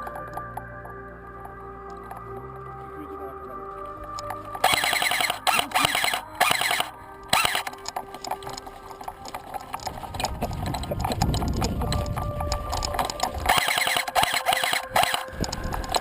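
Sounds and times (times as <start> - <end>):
low rumbling noise: 0.0 - 14.2
airsoft gun firing bursts: 4.6 - 7.8, 13.5 - 15.4.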